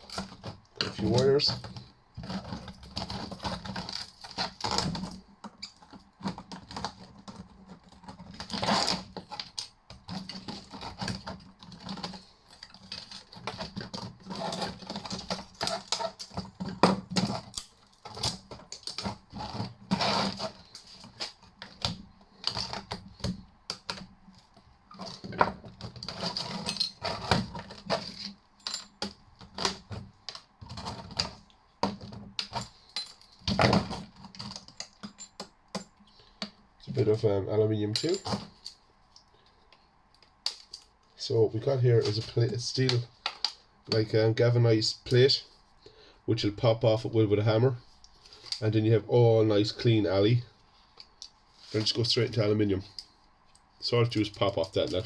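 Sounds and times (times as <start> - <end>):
small metal parts rattling: 0.0 - 36.2, 37.9 - 38.8, 54.0 - 55.0
screwdriver scraping metal: 5.6 - 21.8.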